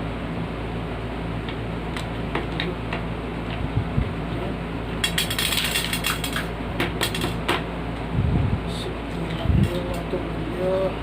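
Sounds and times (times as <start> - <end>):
steady low hum: 0.0 - 11.0
small parts clicking and clinking: 5.0 - 7.4.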